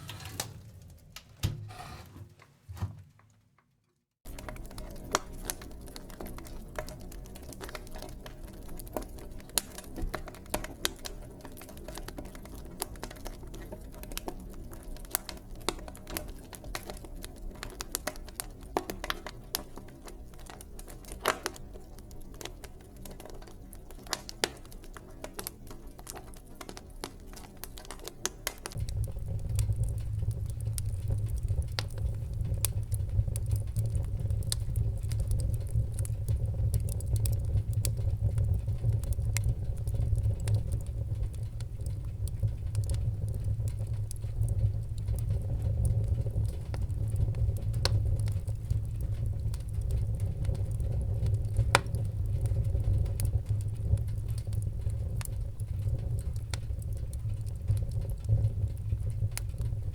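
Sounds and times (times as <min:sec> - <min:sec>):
wood fire crackling: 0:00.0 - 0:02.4, 0:04.2 - 0:59.9
low rumble: 0:28.8 - 0:59.9.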